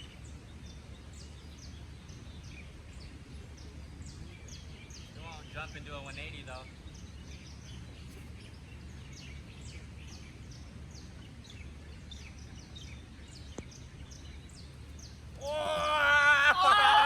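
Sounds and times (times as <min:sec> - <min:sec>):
birds chirping: 0:00.0 - 0:17.0
person exclaiming loudly: 0:15.4 - 0:17.0.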